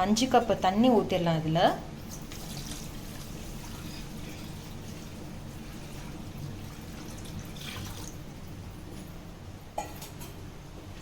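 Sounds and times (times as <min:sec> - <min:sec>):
water pouring into pan: 0:05.8 - 0:08.2.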